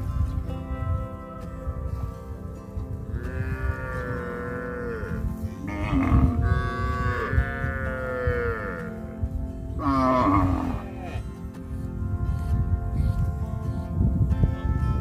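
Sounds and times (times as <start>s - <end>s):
cows mooing: 1.2s - 11.5s.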